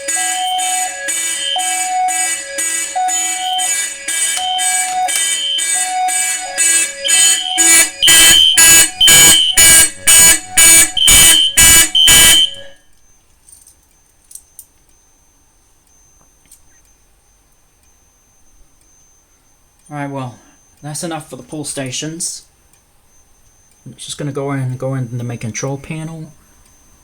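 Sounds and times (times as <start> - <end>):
fire alarm horn blasts: 0.0 - 13.0.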